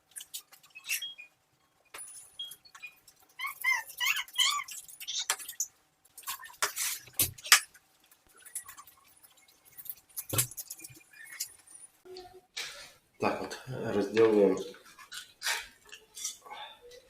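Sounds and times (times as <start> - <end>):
high squeaky call: 2.4 - 5.3.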